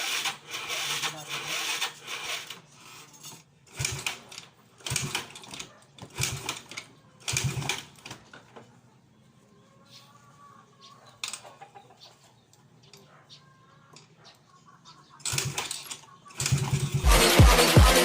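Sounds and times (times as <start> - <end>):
scooter engine cranking: 0.0 - 8.6, 15.2 - 18.0.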